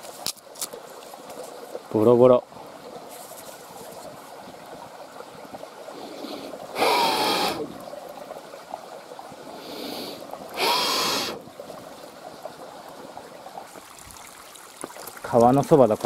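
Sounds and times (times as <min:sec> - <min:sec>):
river water trickling: 0:00.0 - 0:16.0
person breathing in: 0:05.9 - 0:07.7, 0:09.5 - 0:11.4
person blowing hard: 0:06.2 - 0:07.7, 0:09.7 - 0:11.4.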